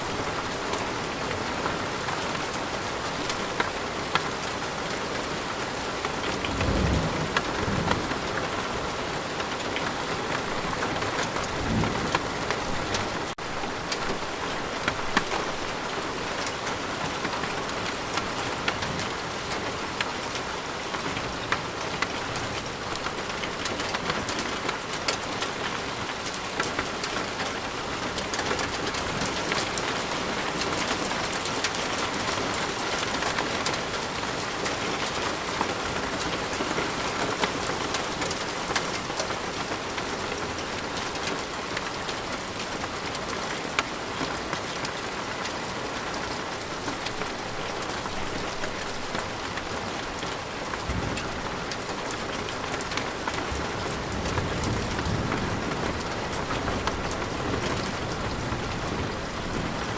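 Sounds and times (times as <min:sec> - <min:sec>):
steady rain with ticking drops: 0:00.0 - 0:59.9
distant thunder rumbles: 0:06.3 - 0:09.1, 0:10.2 - 0:14.4.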